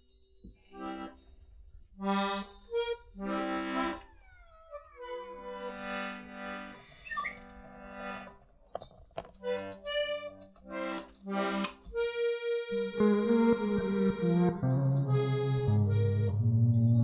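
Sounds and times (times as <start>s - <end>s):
reedy instrumental chords: 9.9s - 17.0s.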